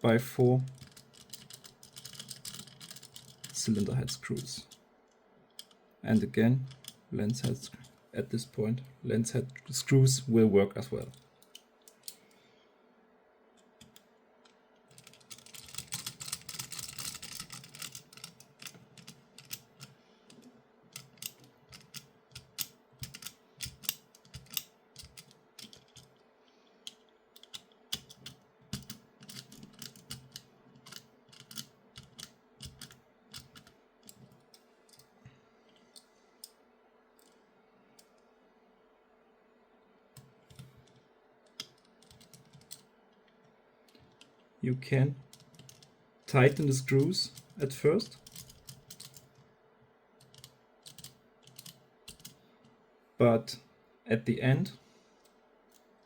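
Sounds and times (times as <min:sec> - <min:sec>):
faint steady hum: 0:00.0 - 0:56.0
parts rattling: 0:00.7 - 0:04.8
screws and plastic parts clicking: 0:00.7 - 0:05.8, 0:06.7 - 0:07.9, 0:13.6 - 0:26.2, 0:26.8 - 0:36.6, 0:40.2 - 0:44.4, 0:45.3 - 0:45.9, 0:47.3 - 0:49.4, 0:50.2 - 0:52.4.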